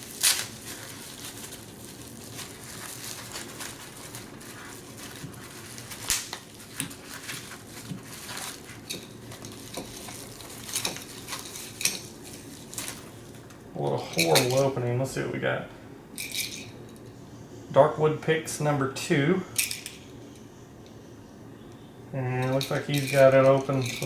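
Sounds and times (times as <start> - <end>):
packaging crinkling and rustling: 0.0 - 13.6
small items clicking and tapping: 5.0 - 13.6.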